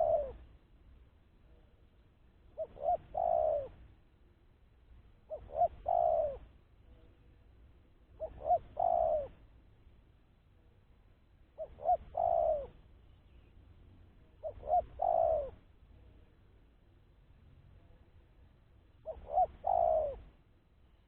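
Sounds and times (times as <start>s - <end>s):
dove cooing: 0.0s - 0.5s, 2.5s - 3.8s, 5.3s - 7.1s, 8.1s - 9.5s, 11.6s - 12.9s, 14.2s - 16.3s, 19.0s - 20.4s.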